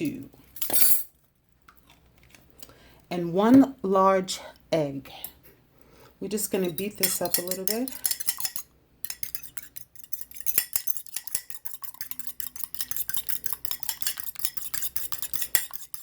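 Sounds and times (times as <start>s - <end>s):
utensil beating egg in bowl: 6.5s - 16.0s.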